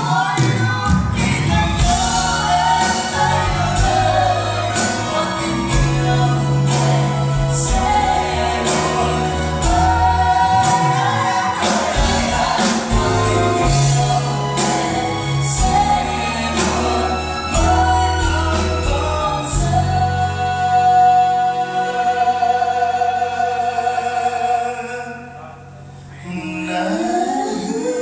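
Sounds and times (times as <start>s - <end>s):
drums and cymbal hits: 0.0s - 20.4s
band playing a song: 0.0s - 22.7s
person singing: 0.0s - 28.0s.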